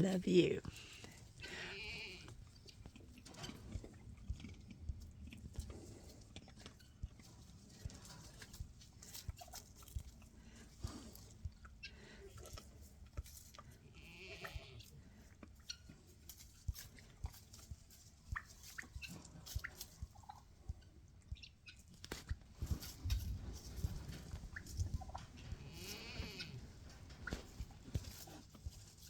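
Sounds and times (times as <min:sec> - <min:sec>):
farm animal calling: 0:00.0 - 0:03.7, 0:13.8 - 0:16.0, 0:24.1 - 0:28.4
rustling: 0:21.9 - 0:29.0.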